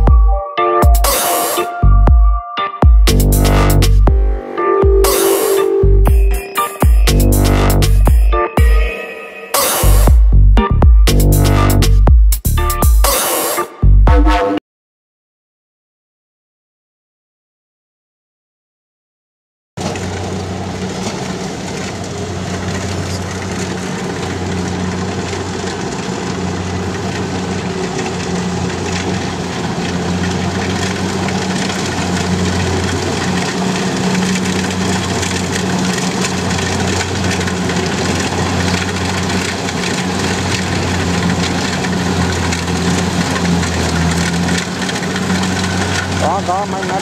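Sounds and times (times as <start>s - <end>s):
large machine engine running: 3.0s - 8.9s, 9.6s - 13.8s, 19.8s - 47.0s.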